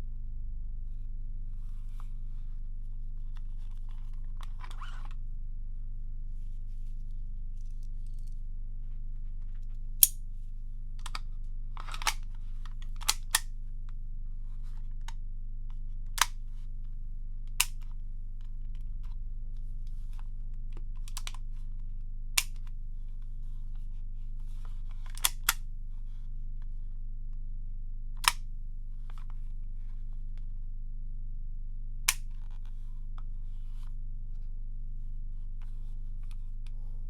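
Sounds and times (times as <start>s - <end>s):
steady low hum: 0.0s - 37.0s.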